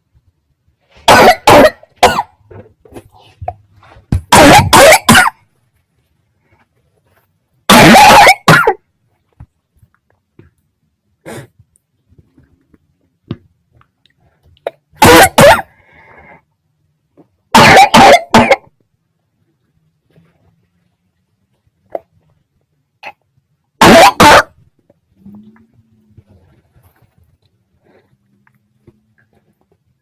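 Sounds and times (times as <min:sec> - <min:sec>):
person coughing: 0:01.0 - 0:02.4, 0:04.3 - 0:05.4, 0:07.7 - 0:08.8, 0:15.0 - 0:15.8, 0:17.5 - 0:18.7, 0:23.8 - 0:24.5.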